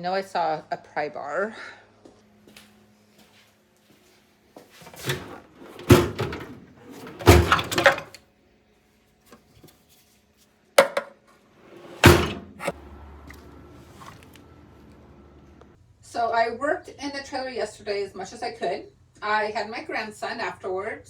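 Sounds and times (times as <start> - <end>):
tools knocking and clanking: 4.9 - 8.2, 10.8 - 11.2, 11.8 - 13.4.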